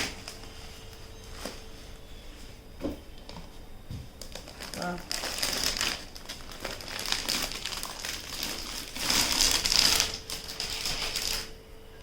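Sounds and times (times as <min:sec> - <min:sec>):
packaging crinkling and rustling: 0:00.0 - 0:02.1, 0:03.1 - 0:11.6.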